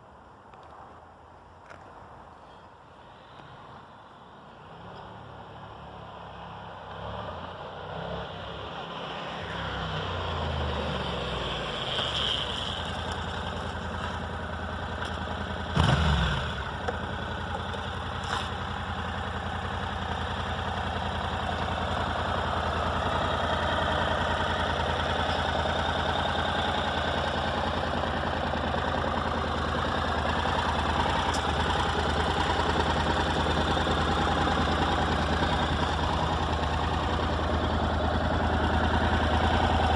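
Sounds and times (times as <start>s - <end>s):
motorcycle engine starting and idling: 11.8s - 39.9s.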